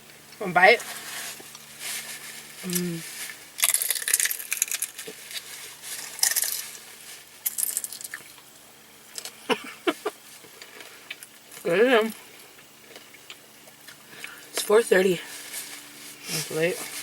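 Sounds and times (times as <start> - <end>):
crunchy chewing: 0.8 - 9.5
small mouth sounds: 2.6 - 3.1.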